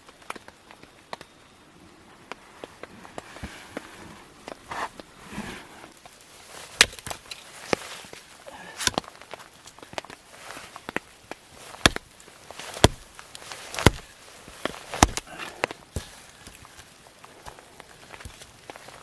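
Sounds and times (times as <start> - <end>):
rustling and clicks: 0.0 - 19.0
wood cracking and knocking: 2.3 - 19.0.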